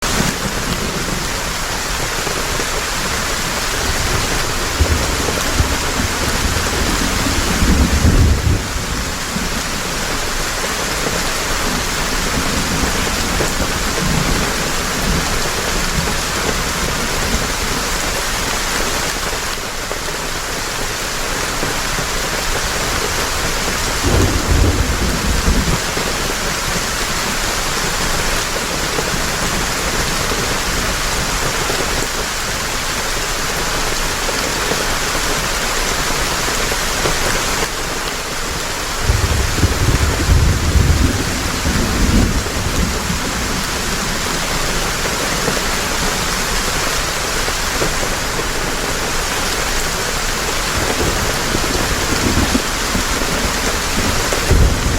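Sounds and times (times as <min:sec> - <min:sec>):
heavy rain hissing: 0:00.0 - 0:54.9
thunder rumbles: 0:00.1 - 0:18.0, 0:23.4 - 0:31.5, 0:38.9 - 0:46.9, 0:47.6 - 0:54.9.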